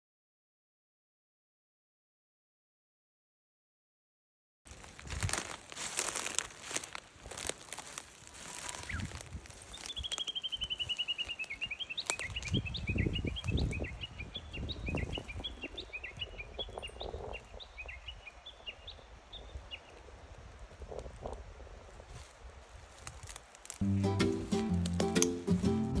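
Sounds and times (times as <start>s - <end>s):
low rumble of wind or handling: 4.7s - 26.0s
songbird singing: 7.4s - 20.0s, 23.8s - 26.0s.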